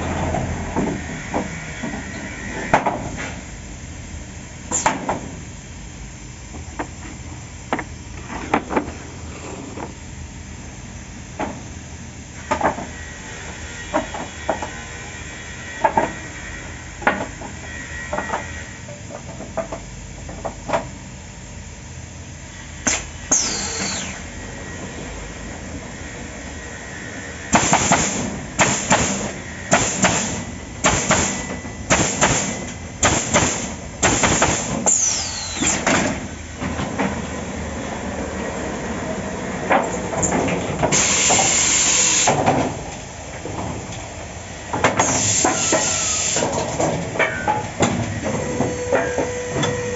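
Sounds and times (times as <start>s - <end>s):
loud nail shots: 27.5s - 36.0s.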